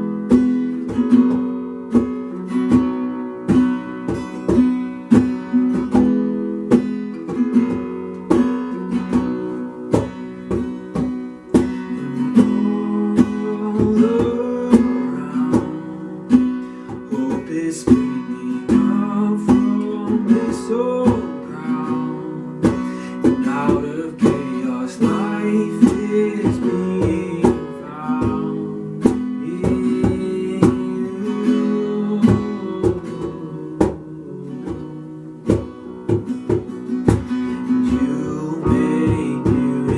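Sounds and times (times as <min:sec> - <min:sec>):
strummed acoustic guitar: 0:00.0 - 0:39.9
person singing: 0:08.6 - 0:39.9.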